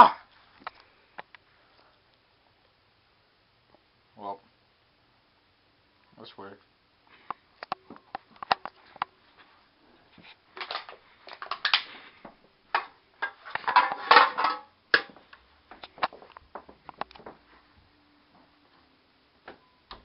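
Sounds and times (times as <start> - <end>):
objects clicking and clattering: 10.6 - 12.0, 12.7 - 15.1.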